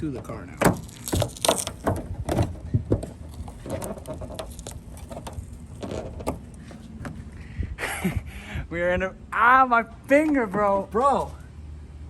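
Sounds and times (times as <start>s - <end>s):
hands tapping plastic on car: 0.6s - 7.2s.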